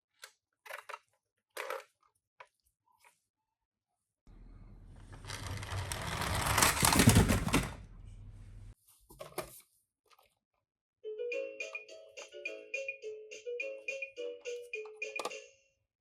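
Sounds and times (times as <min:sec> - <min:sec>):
toy car rattling down a slope: 0:04.4 - 0:08.3.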